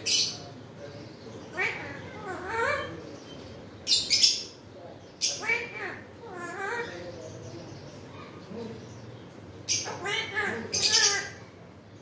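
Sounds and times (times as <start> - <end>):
parrot speech-like call: 1.5 - 3.0, 5.2 - 7.0, 9.8 - 11.4
parrot squawks: 1.5 - 3.0, 5.2 - 6.9, 9.7 - 11.4.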